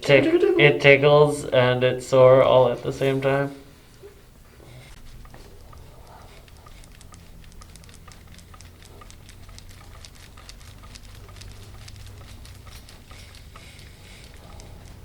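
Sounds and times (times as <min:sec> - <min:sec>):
low steady hum: 0:00.0 - 0:15.0
hands rubbing skin: 0:03.7 - 0:15.0.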